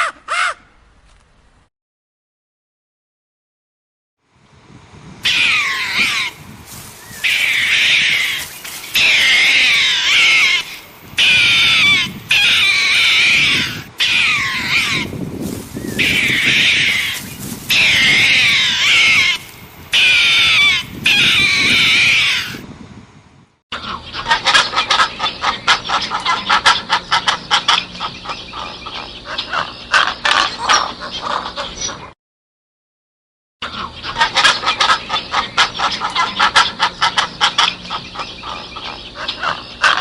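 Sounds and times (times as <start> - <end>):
animal high wavering calls: 5.2 - 22.6.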